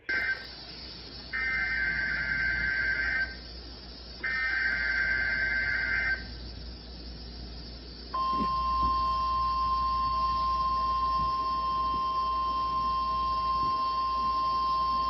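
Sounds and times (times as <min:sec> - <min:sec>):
warbling two-tone data bursts: 0:00.0 - 0:03.5, 0:04.1 - 0:06.4.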